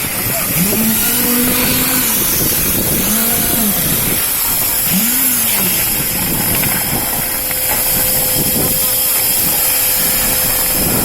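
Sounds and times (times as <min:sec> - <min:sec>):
concrete pump running: 0:00.0 - 0:11.0.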